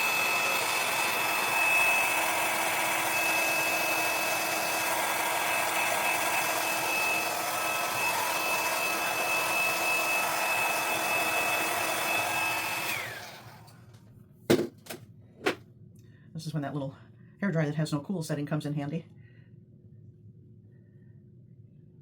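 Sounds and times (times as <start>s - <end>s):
hair dryer blowing: 0.0s - 13.9s.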